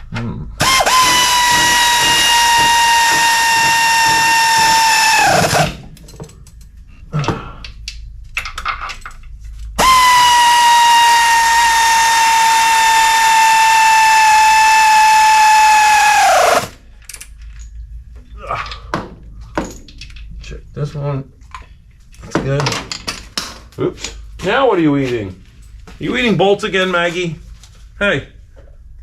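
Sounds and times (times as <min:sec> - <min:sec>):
power tool whining: 0:00.6 - 0:05.8, 0:09.8 - 0:16.8.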